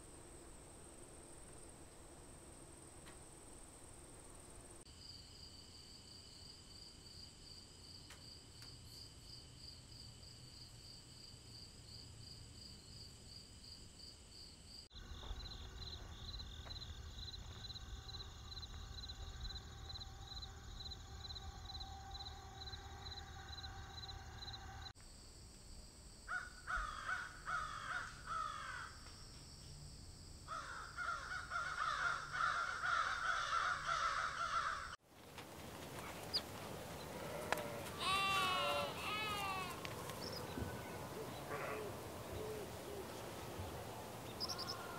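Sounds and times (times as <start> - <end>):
insects chirping: 0.0 - 44.9
crickets trilling: 14.8 - 25.4, 26.0 - 44.9
crows cawing: 26.3 - 29.0, 30.5 - 35.0, 37.1 - 43.1, 44.4 - 44.9
distant road traffic: 35.1 - 44.9.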